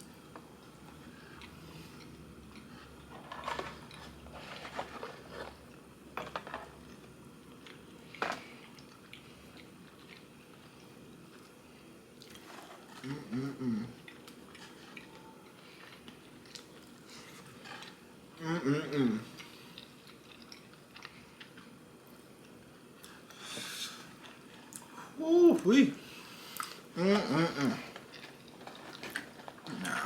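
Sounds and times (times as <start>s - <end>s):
chewing food: 0.6s - 5.8s, 6.8s - 13.2s, 13.9s - 18.0s, 19.3s - 23.4s, 26.5s - 30.0s
person humming briefly: 13.0s - 14.0s, 18.4s - 19.4s, 27.0s - 27.9s.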